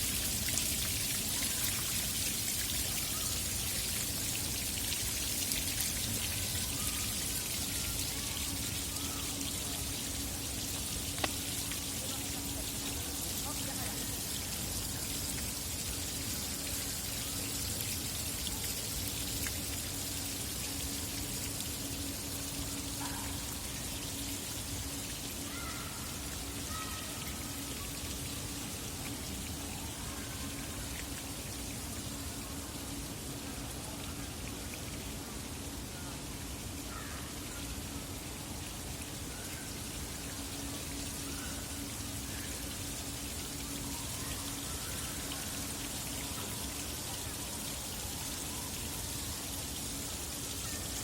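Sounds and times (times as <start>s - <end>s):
fountain water splashing: 0.0s - 51.0s.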